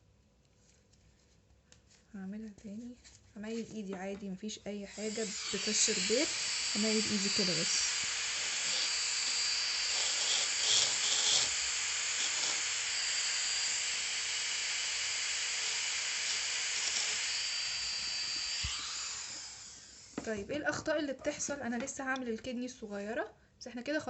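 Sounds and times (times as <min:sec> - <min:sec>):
dental drill hiss and whine: 0:04.9 - 0:20.3.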